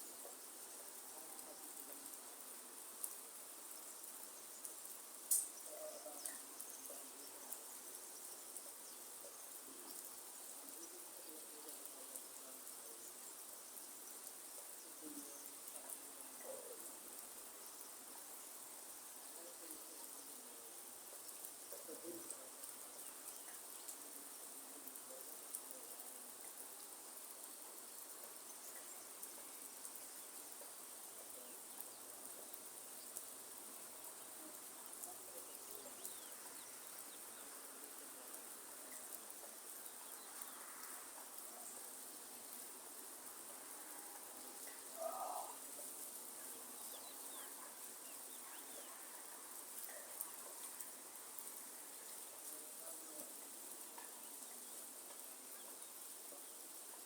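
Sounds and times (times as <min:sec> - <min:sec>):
light rain hiss: 0:00.0 - 0:57.0
soft low animal calls: 0:44.7 - 0:45.8.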